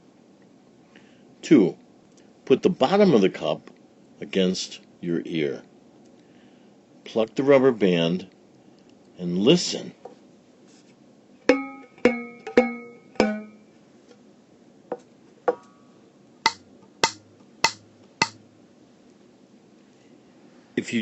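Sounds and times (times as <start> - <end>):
rubber band twanging: 11.5 - 13.6, 14.9 - 15.8, 16.5 - 18.4.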